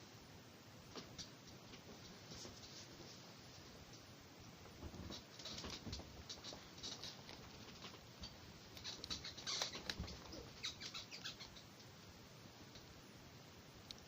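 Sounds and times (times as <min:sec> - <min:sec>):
faint scratching and tapping clicks: 0:00.9 - 0:12.1.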